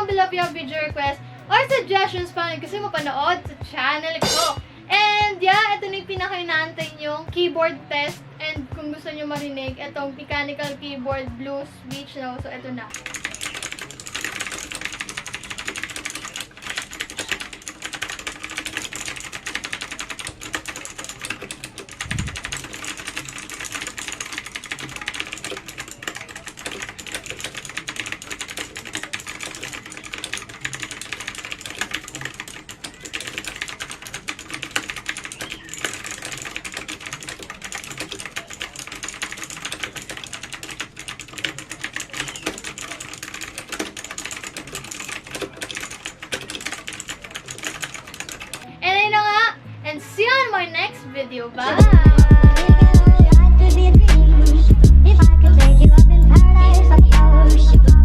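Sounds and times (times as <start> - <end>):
mechanical keyboard typing: 0.0 - 3.3, 12.8 - 48.6, 51.7 - 58.0.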